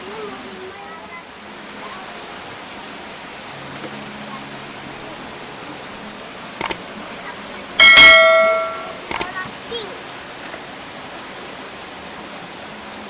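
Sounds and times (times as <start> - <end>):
steady hiss: 0.0 - 13.0
short sharp clicks: 6.6 - 6.8, 9.1 - 9.3
metallic clang: 7.8 - 9.2.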